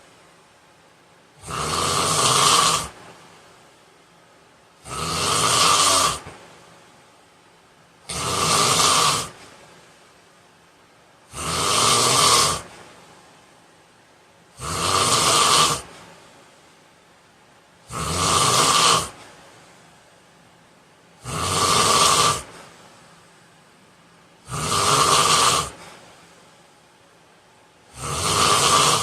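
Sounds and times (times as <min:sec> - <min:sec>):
man snoring: 0:01.4 - 0:03.0, 0:04.8 - 0:06.3, 0:08.1 - 0:09.4, 0:11.3 - 0:12.7, 0:14.6 - 0:15.9, 0:17.9 - 0:19.2, 0:21.2 - 0:22.6, 0:24.4 - 0:25.9, 0:27.9 - 0:29.0.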